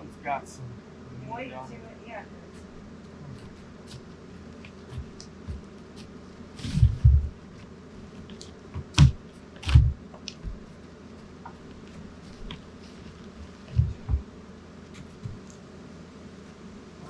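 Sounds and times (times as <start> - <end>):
thumps of wooden lumber handled: 4.6 - 10.8, 12.3 - 14.3.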